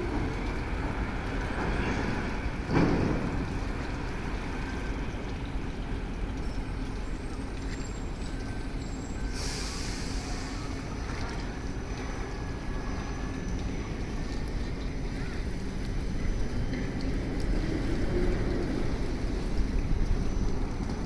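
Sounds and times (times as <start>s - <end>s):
heavy trucks rumbling: 0.0s - 6.8s, 8.4s - 21.0s
air brake hiss: 9.2s - 10.8s.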